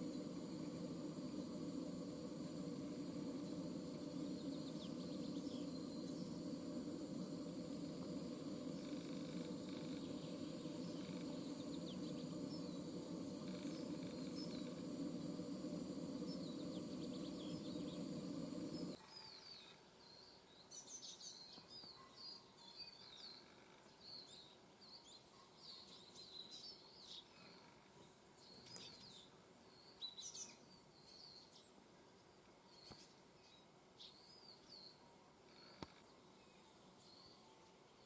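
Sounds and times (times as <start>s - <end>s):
low rumble of background noise: 0.0s - 19.0s
small birds chirping: 0.0s - 31.8s, 32.7s - 38.0s.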